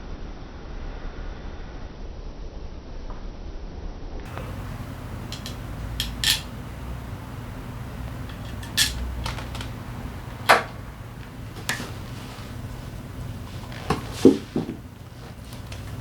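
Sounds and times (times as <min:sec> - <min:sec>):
metal tools clinking: 0:04.3 - 0:16.0
steady low hum: 0:04.3 - 0:16.0.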